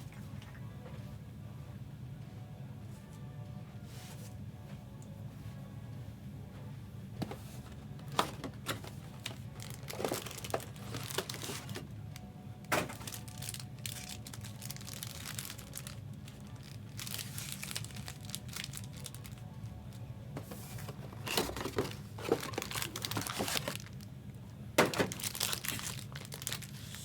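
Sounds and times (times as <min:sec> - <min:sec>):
plastic packaging crinkling and tearing: 0:08.0 - 0:19.8, 0:20.4 - 0:24.1, 0:24.8 - 0:27.0.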